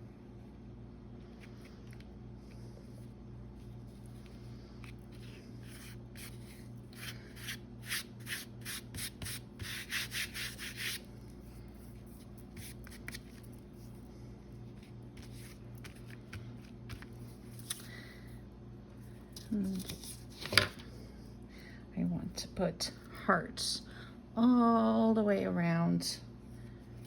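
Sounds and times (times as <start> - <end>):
low electrical hum: 0.0 - 27.0
paper being rubbed by hand: 5.1 - 11.0.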